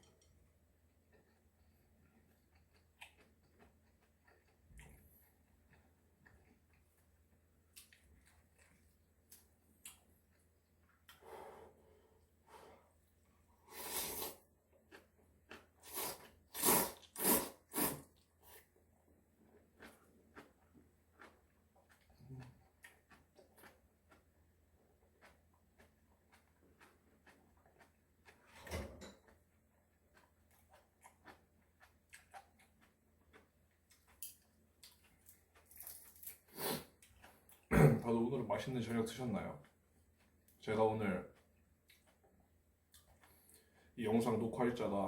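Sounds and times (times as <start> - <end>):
chewing food: 0.0 - 37.7, 38.5 - 44.4.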